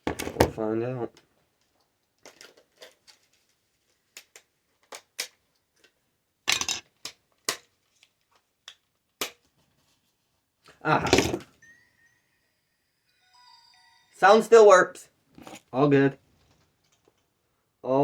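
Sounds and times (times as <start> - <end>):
plastic game console clicks and taps: 4.1 - 6.0.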